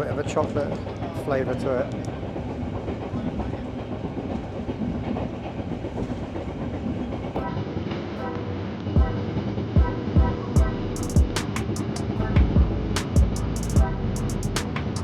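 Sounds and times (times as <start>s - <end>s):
train carriage rumbling and rattling: 0.0s - 7.8s
background music: 7.4s - 15.0s.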